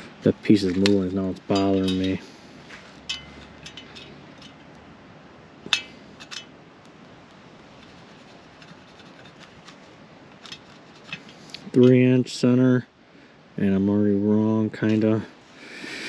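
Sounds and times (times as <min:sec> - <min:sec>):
hand tools clicking and tapping: 0:00.6 - 0:02.2, 0:03.0 - 0:04.8, 0:05.7 - 0:06.5, 0:07.7 - 0:12.0.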